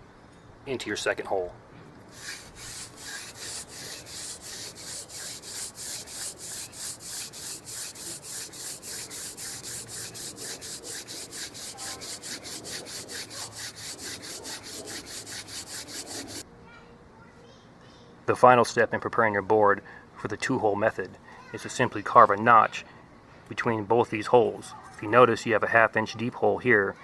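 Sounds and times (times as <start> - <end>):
wood rubbing on wood: 2.1 - 16.4.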